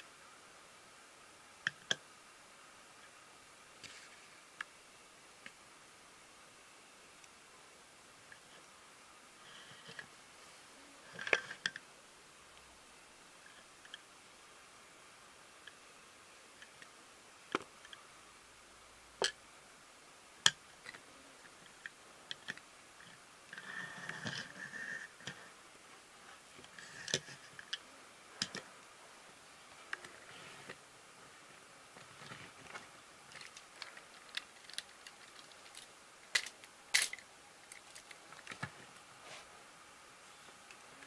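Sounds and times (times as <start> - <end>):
sharp clicks of small objects: 33.3 - 38.5.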